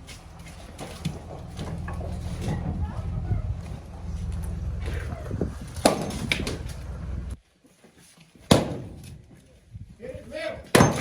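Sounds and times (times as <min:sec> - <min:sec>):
low steady rumble: 0:00.0 - 0:07.4
axe chopping firewood: 0:04.8 - 0:06.8, 0:08.5 - 0:09.2, 0:10.7 - 0:11.0.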